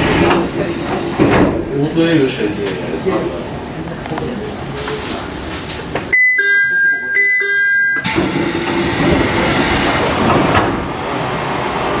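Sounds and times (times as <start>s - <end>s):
two-note electronic door chime: 6.2s - 9.0s.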